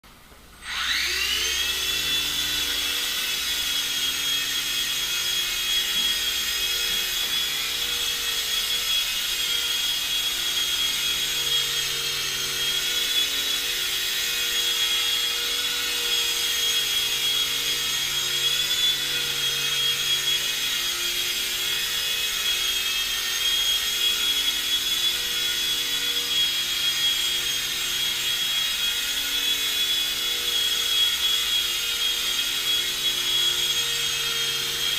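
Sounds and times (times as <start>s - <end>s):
electric motor high-pitched whine: 0.6s - 34.9s.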